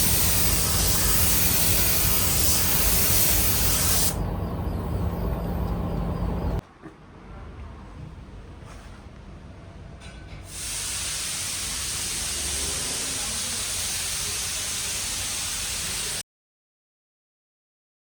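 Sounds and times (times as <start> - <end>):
compressed air hissing: 0.0 - 4.2, 10.5 - 16.2
low rumble: 0.6 - 6.6.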